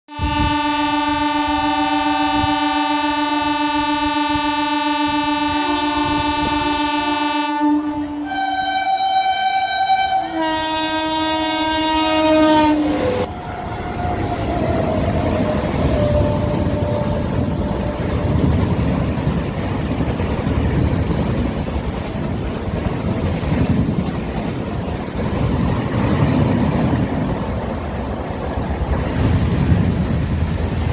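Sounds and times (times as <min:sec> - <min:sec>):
train horn blast: 0:00.1 - 0:19.1.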